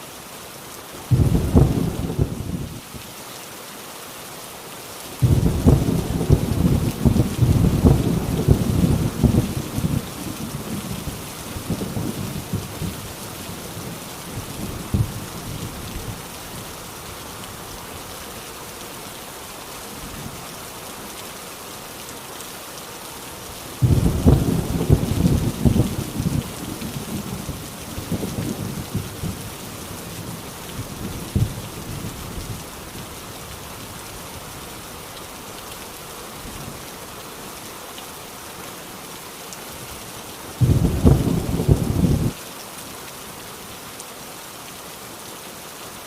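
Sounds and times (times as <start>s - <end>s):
heavy rain falling: 0.0s - 46.0s
loud thunderclap: 5.2s - 10.0s, 23.8s - 26.5s, 40.6s - 42.4s.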